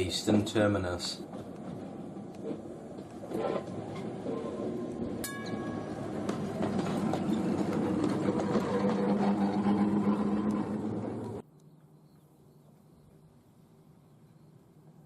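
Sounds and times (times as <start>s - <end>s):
tram wheels rumbling on rails: 0.0s - 11.4s
short metallic ring: 5.2s - 5.9s.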